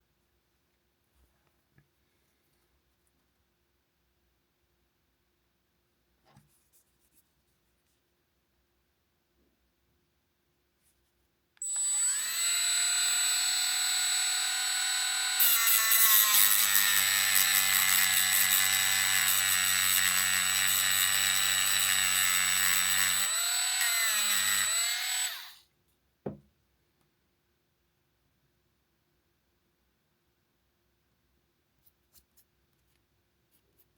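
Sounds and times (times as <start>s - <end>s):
electric grinder whine: 11.6s - 25.6s
grinder grinding into metal: 11.6s - 25.6s
short knock: 26.2s - 26.5s.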